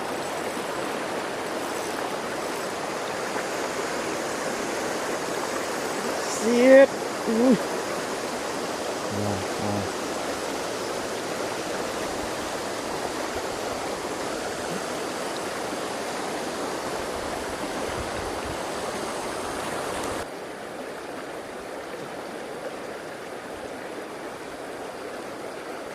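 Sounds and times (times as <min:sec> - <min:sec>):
river rapids rushing: 0:00.0 - 0:20.3.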